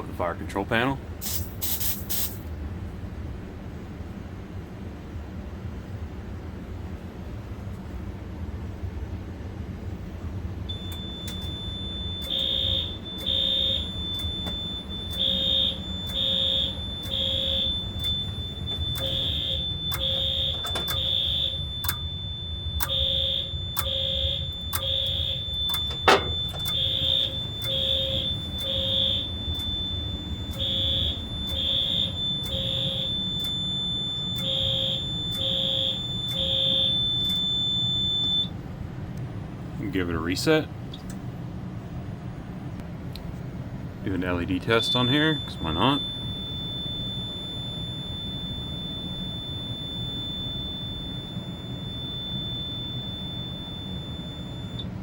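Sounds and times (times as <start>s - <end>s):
continuous high-pitched tone: 10.0s - 55.0s
fire alarm blasts: 10.7s - 38.6s, 44.0s - 55.0s.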